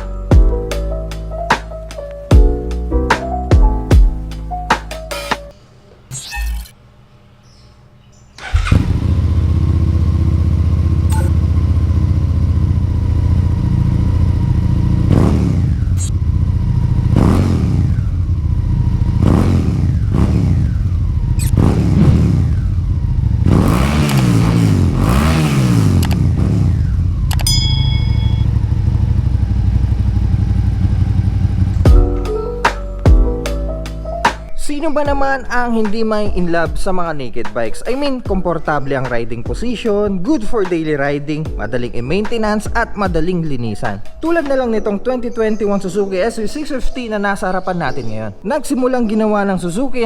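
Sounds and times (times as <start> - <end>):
motorcycle engine idling and revving: 8.4 - 32.1.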